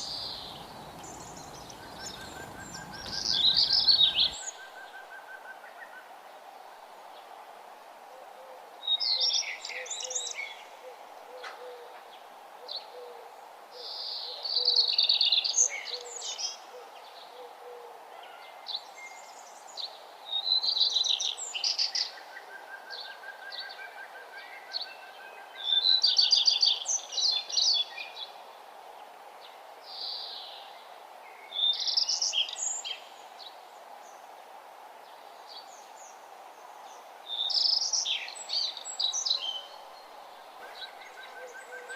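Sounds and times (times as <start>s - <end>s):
songbird singing: 0.0s - 6.0s, 8.8s - 28.4s, 29.4s - 34.3s, 35.0s - 41.9s
faint background hiss: 0.0s - 41.9s.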